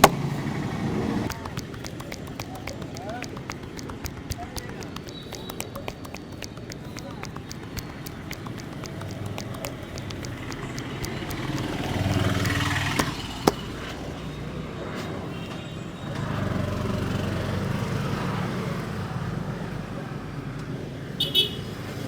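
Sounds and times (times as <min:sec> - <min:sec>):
sharp snap: 0:00.0 - 0:00.4, 0:01.3 - 0:13.8
vehicles passing: 0:00.0 - 0:22.0.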